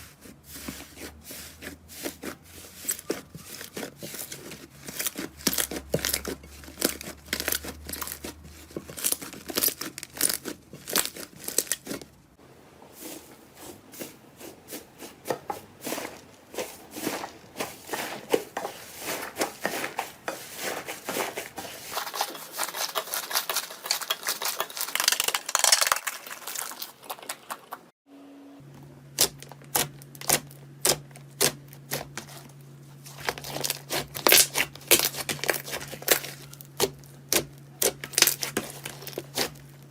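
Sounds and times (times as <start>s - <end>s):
slime crackling and popping: 9.0s - 12.0s, 22.0s - 27.5s, 33.3s - 39.6s.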